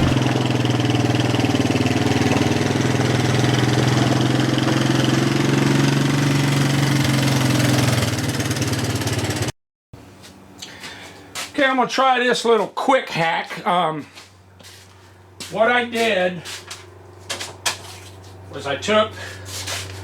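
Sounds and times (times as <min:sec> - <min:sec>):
outboard motor idling: 0:00.0 - 0:09.5.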